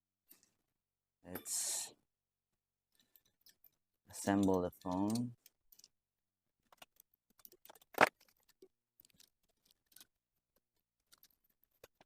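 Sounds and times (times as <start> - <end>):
small clicks and taps of repair tools: 3.0 - 6.0.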